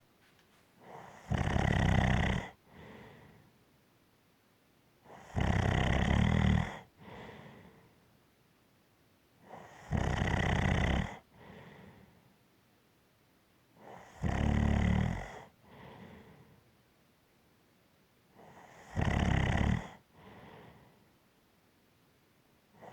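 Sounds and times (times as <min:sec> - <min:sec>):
person snoring: 0:00.8 - 0:02.6, 0:05.1 - 0:06.8, 0:09.6 - 0:11.2, 0:13.9 - 0:15.4, 0:18.6 - 0:20.0.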